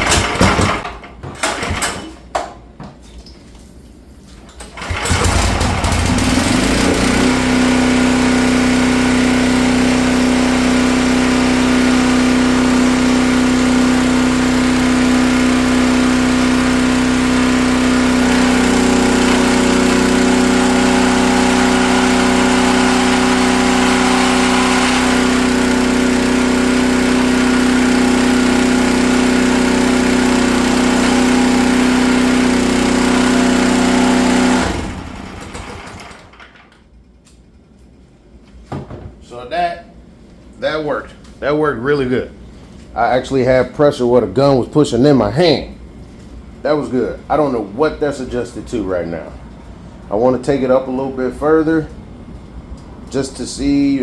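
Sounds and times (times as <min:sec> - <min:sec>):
engine shutting off: 0:04.7 - 0:36.5
pressure washer engine running: 0:04.8 - 0:36.3.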